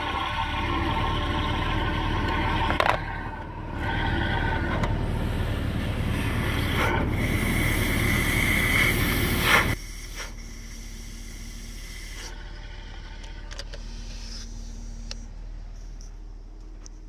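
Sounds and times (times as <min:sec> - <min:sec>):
car engine hissing and whistling: 0:00.0 - 0:17.0
faint hum: 0:05.0 - 0:17.0.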